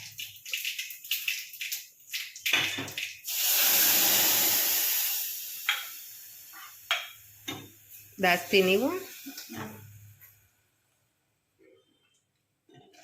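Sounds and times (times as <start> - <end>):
crackling oil: 0.0 - 3.4
loud oil sizzle: 0.0 - 10.3.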